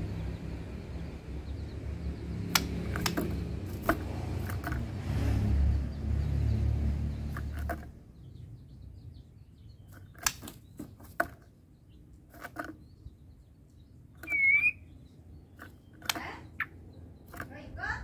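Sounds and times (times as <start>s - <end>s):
bird call notes: 14.2s - 15.0s.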